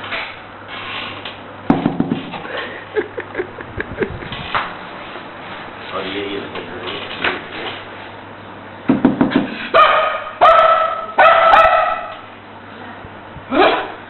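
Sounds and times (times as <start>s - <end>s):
dog barking: 9.7s - 12.2s, 13.5s - 14.0s
dog yelping: 9.7s - 12.2s, 13.5s - 14.0s.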